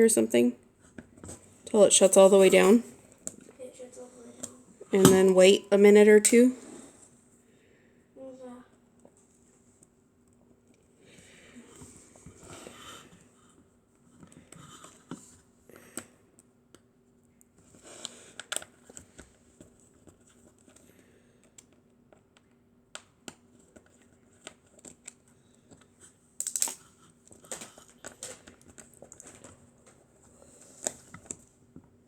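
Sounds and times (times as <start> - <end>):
faint steady hum: 0.0 - 32.0.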